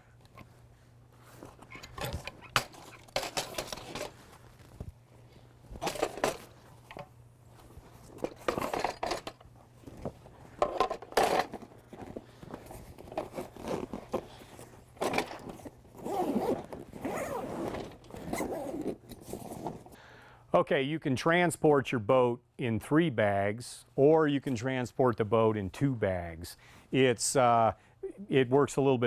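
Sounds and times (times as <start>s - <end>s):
fabric bag rustling and scraping: 11.5s - 20.0s
zipper being pulled: 13.1s - 14.6s, 15.9s - 19.9s.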